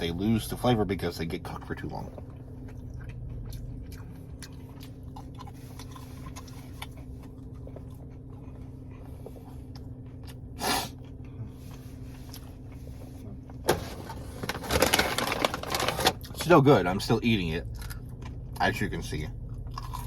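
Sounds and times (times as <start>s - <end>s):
steady low hum: 0.0s - 20.0s
chewing with mouth clicks: 2.0s - 13.0s, 17.7s - 18.7s, 19.4s - 20.0s.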